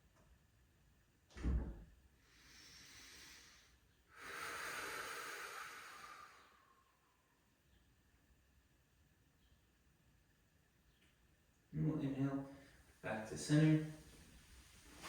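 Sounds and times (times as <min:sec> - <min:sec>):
person breathing: 0:02.2 - 0:07.2.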